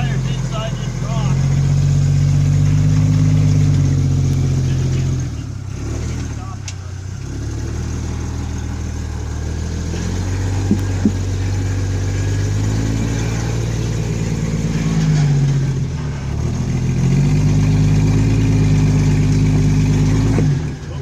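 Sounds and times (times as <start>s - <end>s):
off-road vehicle engine revving: 0.0s - 21.0s
short sharp knocks: 10.6s - 11.3s.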